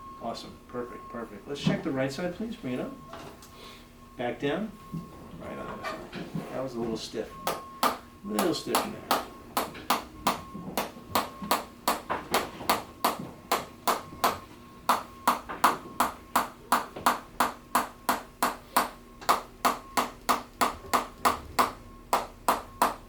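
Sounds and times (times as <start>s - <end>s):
sharp clicking taps with ringing tone: 7.4s - 23.0s.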